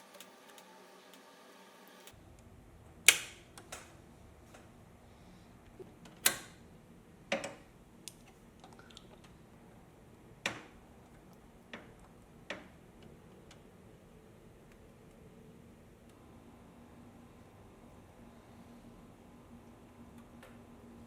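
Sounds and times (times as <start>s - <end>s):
computer parts clicking and knocking: 7.3s - 8.4s, 10.4s - 13.6s.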